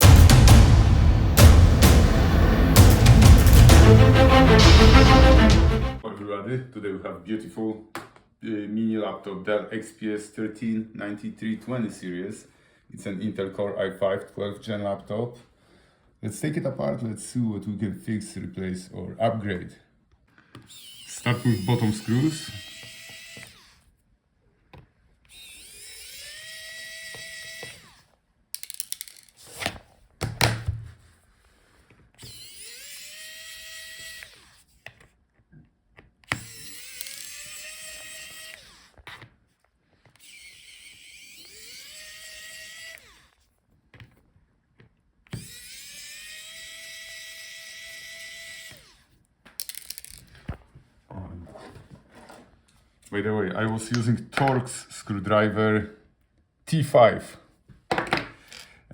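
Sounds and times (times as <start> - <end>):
electric screwdriver whining: 20.5 - 23.9, 25.3 - 29.6, 32.2 - 35.0, 36.2 - 39.3, 40.0 - 43.5, 45.3 - 50.2.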